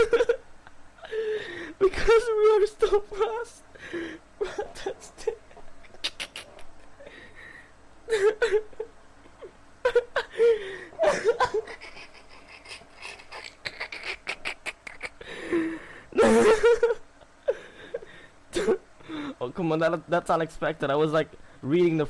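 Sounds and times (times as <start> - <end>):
person laughing: 0.0 - 3.6, 4.4 - 7.3, 8.1 - 18.8.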